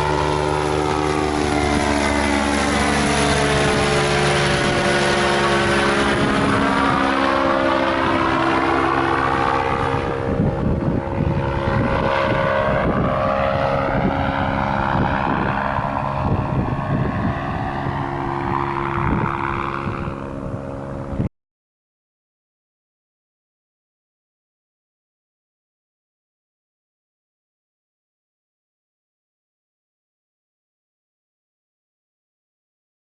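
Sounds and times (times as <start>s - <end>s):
paramotor engine running: 0.0s - 21.3s
wind buffeting microphone: 0.0s - 21.3s.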